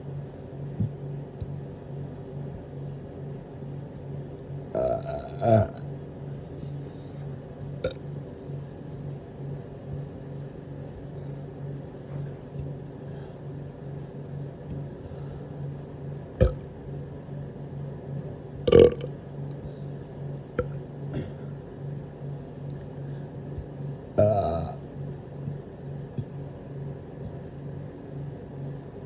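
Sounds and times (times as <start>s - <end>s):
pulsing low hum: 0.0s - 29.0s
person burping: 4.8s - 5.8s, 18.7s - 19.1s, 24.2s - 24.8s.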